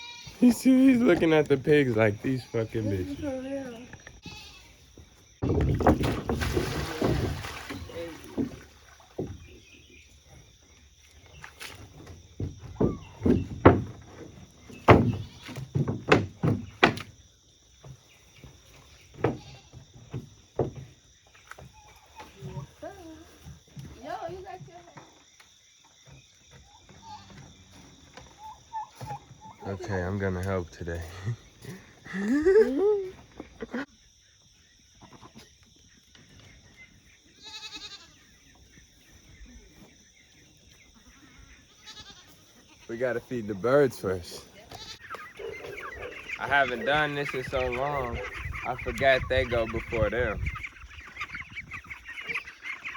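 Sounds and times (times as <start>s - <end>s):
goat bleating: 0.0s - 0.6s, 2.2s - 4.7s, 19.4s - 19.7s, 37.4s - 38.2s, 41.7s - 42.9s, 44.6s - 49.0s
livestock calling: 0.0s - 5.0s, 28.2s - 30.1s, 36.8s - 52.9s
faint farmyard sounds: 0.0s - 52.9s.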